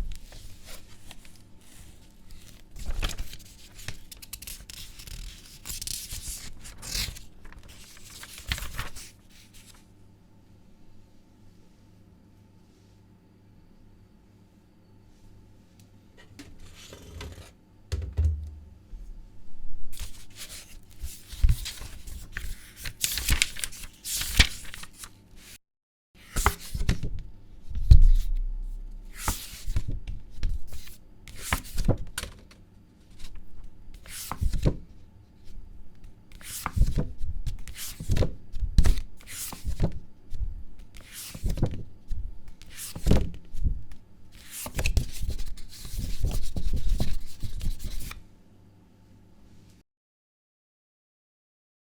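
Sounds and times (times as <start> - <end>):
pages flipping: 0.1 - 9.8, 20.0 - 25.1, 26.3 - 27.1, 27.8 - 30.0, 30.8 - 32.4, 34.0 - 34.8, 44.4 - 48.2
paper pages rustling: 0.1 - 9.8, 20.0 - 25.1, 26.3 - 27.1, 27.8 - 32.3, 44.4 - 48.2
low thump: 17.9 - 19.1, 27.9 - 29.2.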